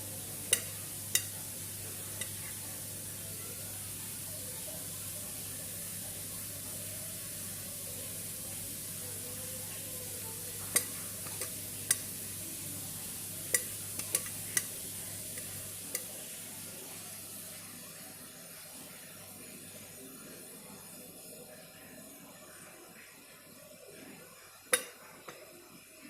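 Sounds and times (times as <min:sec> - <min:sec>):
food sizzling in a pan: 0:00.0 - 0:26.0
metal utensil clinking on pan: 0:00.5 - 0:01.4, 0:02.2 - 0:02.6, 0:13.5 - 0:14.7.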